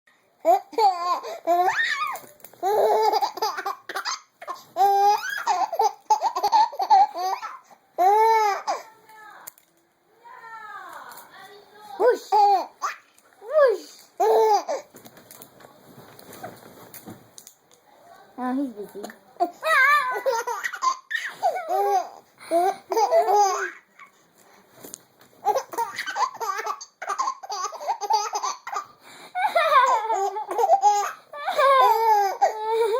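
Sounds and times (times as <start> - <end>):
baby laughing: 0.4 - 8.9, 12.0 - 13.1, 14.2 - 14.9, 19.4 - 24.1, 25.4 - 32.9.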